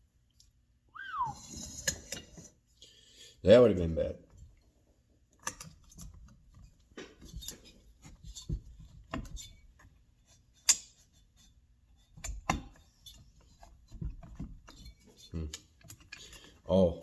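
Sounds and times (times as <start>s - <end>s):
metal clicks and knocks: 5.4s - 9.9s.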